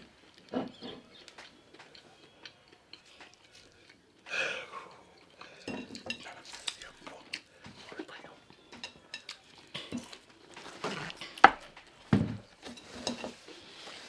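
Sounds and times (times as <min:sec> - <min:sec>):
cutlery clinking against dishes: 0:05.3 - 0:06.9, 0:08.5 - 0:14.0.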